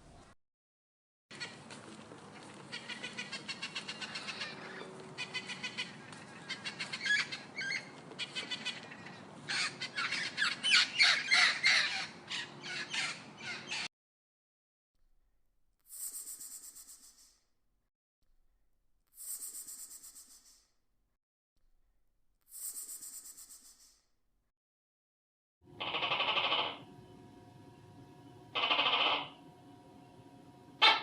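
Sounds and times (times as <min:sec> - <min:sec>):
bird squawking and chirping: 0:02.7 - 0:13.9, 0:25.8 - 0:26.9, 0:28.6 - 0:29.4, 0:30.8 - 0:31.0.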